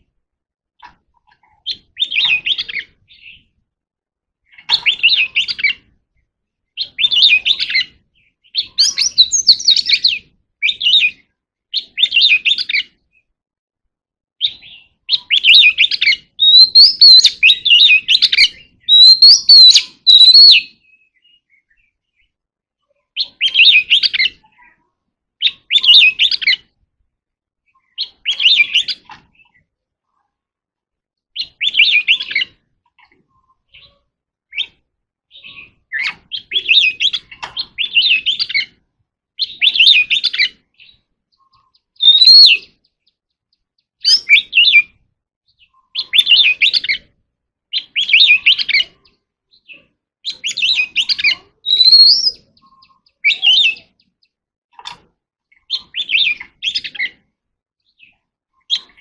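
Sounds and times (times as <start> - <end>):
bird singing whistled phrases: 4.5 - 5.8, 6.8 - 13.3, 14.4 - 22.3, 23.2 - 24.7, 25.4 - 26.6, 27.7 - 29.0, 31.4 - 32.6, 39.4 - 42.9, 44.0 - 47.1, 47.7 - 54.1, 55.6 - 57.2.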